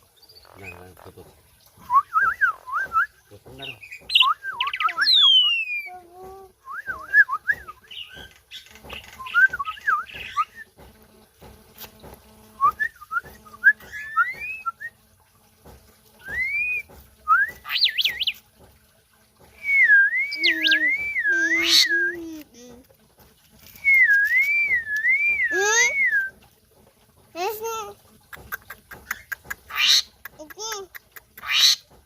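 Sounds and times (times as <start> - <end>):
starling singing whistled phrases: 1.9 - 6.0, 6.6 - 8.3, 9.1 - 10.7, 12.6 - 15.0, 16.2 - 18.4, 19.6 - 22.2, 23.8 - 26.4.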